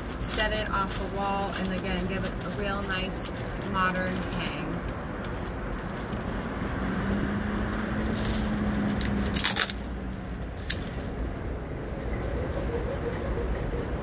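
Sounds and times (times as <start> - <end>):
packaging ripping: 0.0 - 6.7, 7.6 - 11.1
packaging crinkling: 0.0 - 6.8, 7.6 - 11.2
low background rumble: 0.0 - 14.0.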